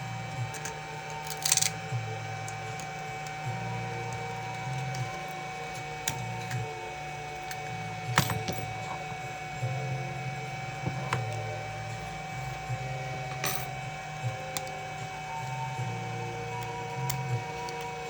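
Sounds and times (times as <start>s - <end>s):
steady machine hum: 0.0s - 18.0s
metal tools clicking on phone parts: 0.5s - 1.9s.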